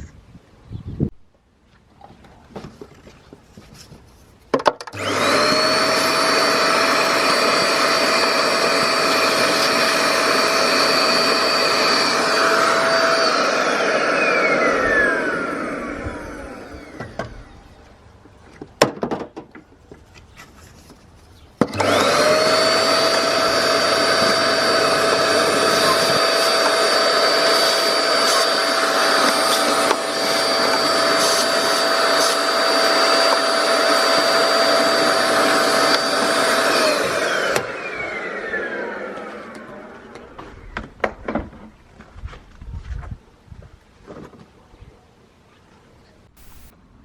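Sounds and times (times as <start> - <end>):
vacuum cleaner whine: 5.0 - 17.9, 21.6 - 40.9, 46.4 - 46.7.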